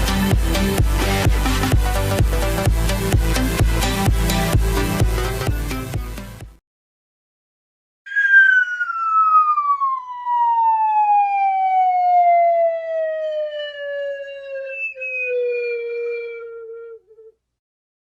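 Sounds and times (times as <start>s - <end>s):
falling whistle: 8.1s - 17.3s.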